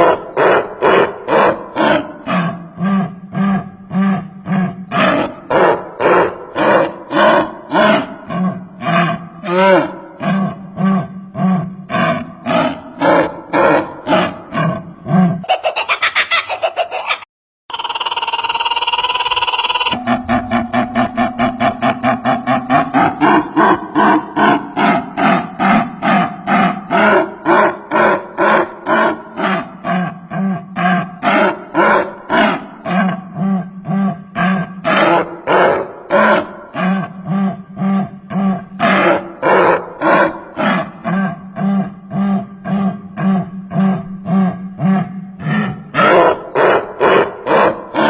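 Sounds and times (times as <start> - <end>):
bird harsh call and rattling trill: 15.4 - 20.0.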